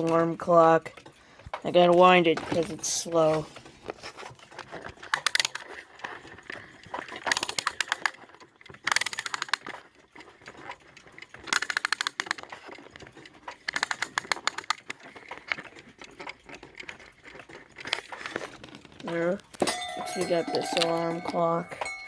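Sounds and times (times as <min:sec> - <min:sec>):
alarm clock winding ratchet clicks: 0:04.4 - 0:22.0.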